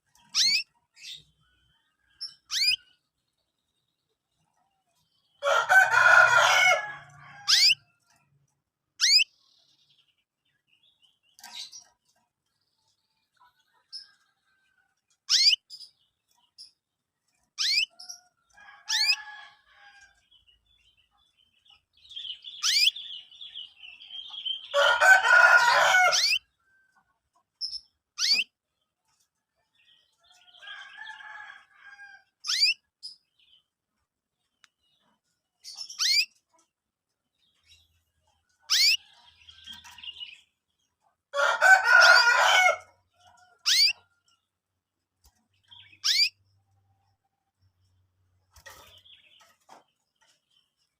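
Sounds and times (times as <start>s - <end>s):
canaries chirping: 0.0s - 3.2s, 4.1s - 26.6s, 27.4s - 44.5s, 45.2s - 50.9s
canary song bursts: 0.3s - 1.3s, 2.2s - 2.9s, 7.4s - 7.9s, 9.0s - 9.4s, 15.3s - 15.9s, 17.6s - 18.1s, 22.4s - 23.3s, 26.1s - 26.5s, 27.6s - 28.5s, 32.4s - 33.2s, 35.6s - 36.3s, 38.6s - 39.0s, 43.6s - 44.0s, 45.7s - 46.4s.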